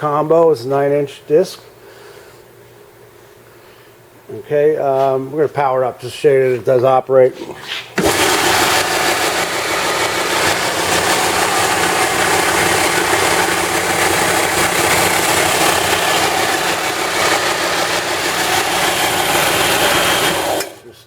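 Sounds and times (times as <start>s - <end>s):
belt sander running: 8.0s - 20.8s
low motor hum: 8.0s - 20.8s.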